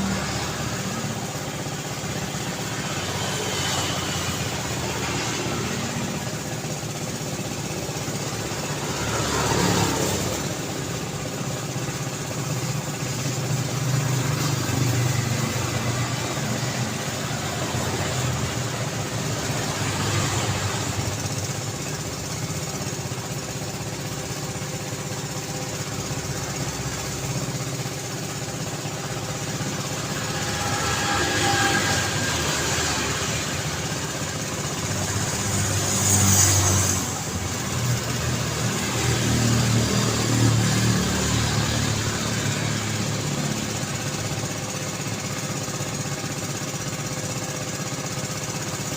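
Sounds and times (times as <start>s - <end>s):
vehicles passing: 0.0s - 47.0s
road traffic: 0.0s - 48.9s.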